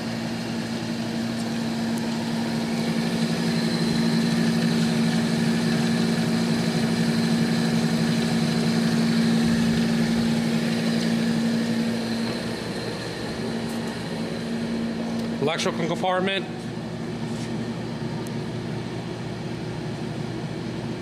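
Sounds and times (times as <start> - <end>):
disc grinder humming: 0.0 - 20.0.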